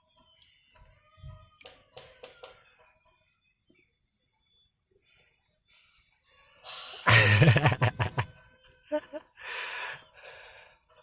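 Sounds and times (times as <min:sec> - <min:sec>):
breathy exhalations: 0:09.4 - 0:10.8.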